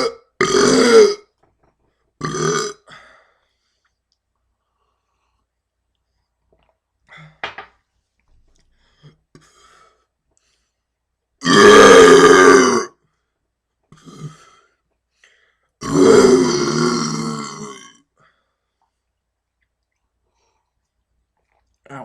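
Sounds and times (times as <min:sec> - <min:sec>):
man burping: 0:00.0 - 0:01.3, 0:02.2 - 0:03.1, 0:11.4 - 0:12.9, 0:13.9 - 0:14.5, 0:15.8 - 0:18.0.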